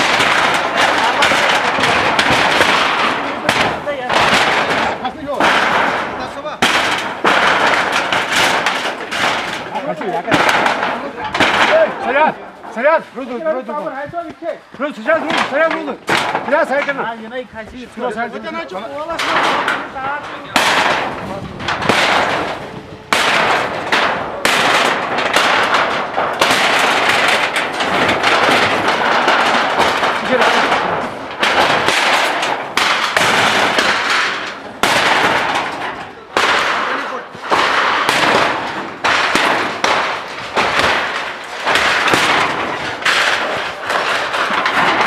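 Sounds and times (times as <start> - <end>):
demolition crackling and crashing: 0.0 - 45.0.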